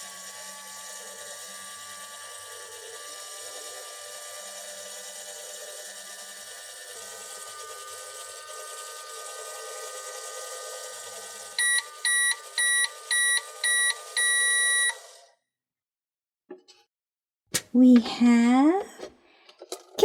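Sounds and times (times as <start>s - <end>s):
toy microwave humming: 0.0s - 15.4s
microwave beeping: 11.6s - 15.2s.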